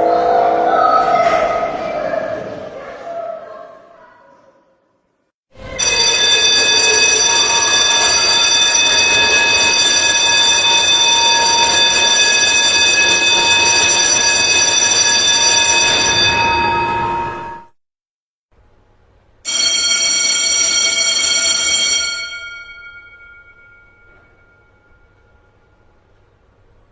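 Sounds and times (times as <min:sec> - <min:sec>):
electric bell ringing: 0:05.6 - 0:17.7, 0:19.5 - 0:26.0.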